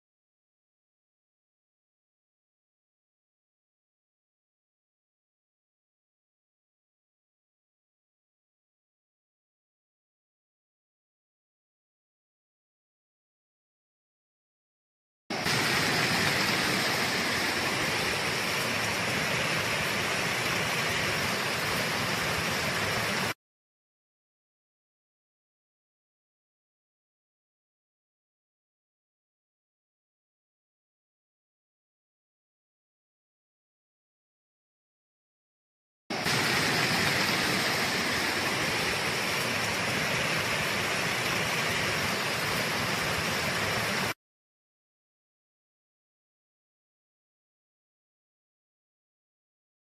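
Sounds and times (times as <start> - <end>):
heavy rain hissing: 15.3 - 23.4, 36.1 - 44.2.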